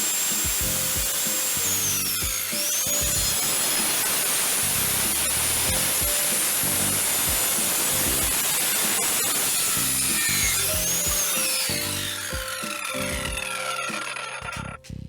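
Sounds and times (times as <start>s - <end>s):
background music with bass notes: 0.5s - 3.5s, 4.6s - 8.5s, 9.6s - 13.5s.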